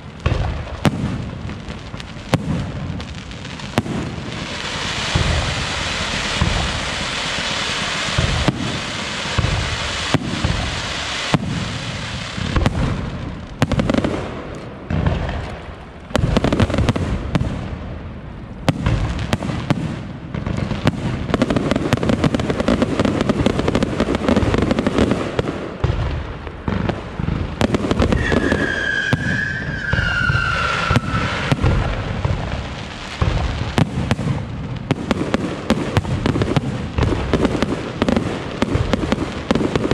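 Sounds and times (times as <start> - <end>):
fireworks bangs and booms: 0.0 - 39.9
falling whistle: 28.2 - 31.5.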